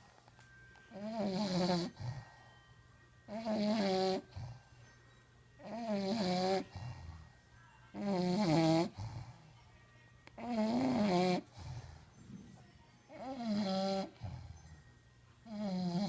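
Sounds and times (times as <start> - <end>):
dog snoring: 0.9 - 2.4, 3.3 - 4.7, 5.6 - 7.3, 7.9 - 9.6, 10.4 - 16.0.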